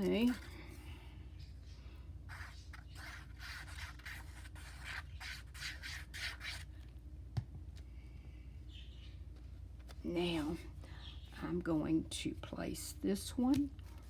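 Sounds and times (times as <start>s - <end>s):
paper being rubbed: 2.3s - 6.6s.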